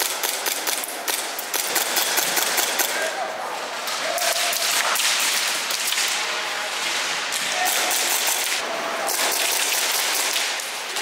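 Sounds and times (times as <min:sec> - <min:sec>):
airsoft guns firing bursts: 0:00.0 - 0:03.1, 0:07.6 - 0:10.7.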